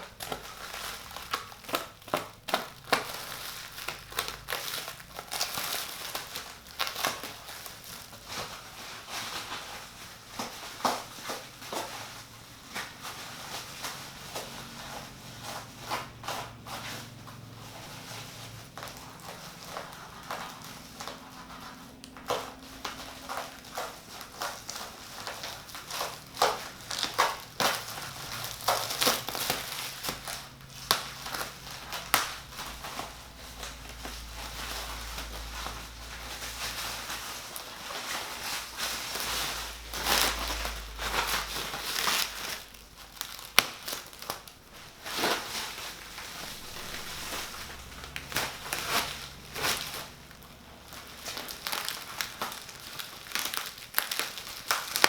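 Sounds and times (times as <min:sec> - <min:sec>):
cardboard crinkling and rustling: 0:00.0 - 0:55.0.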